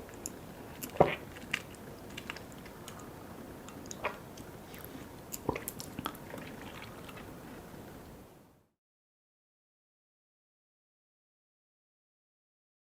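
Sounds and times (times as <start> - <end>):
chewing sticky food: 0.1 - 8.0.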